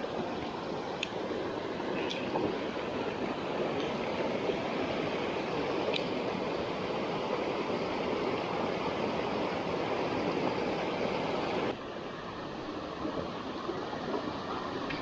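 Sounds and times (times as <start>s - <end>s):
stream water rushing: 0.0s - 15.0s.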